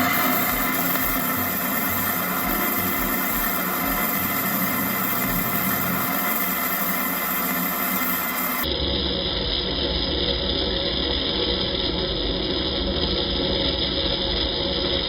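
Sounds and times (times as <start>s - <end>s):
water jet spraying into cup: 0.0s - 8.7s.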